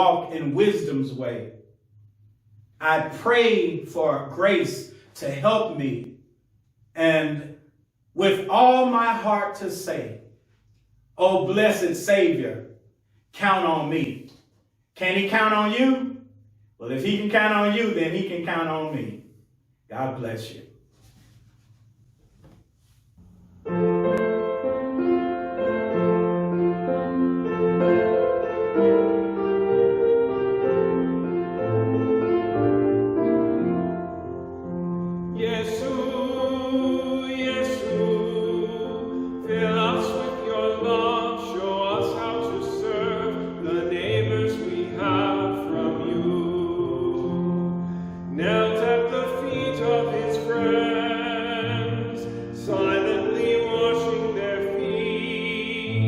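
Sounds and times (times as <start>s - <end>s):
keyboard music: 23.2s - 56.0s
person singing: 35.3s - 56.0s.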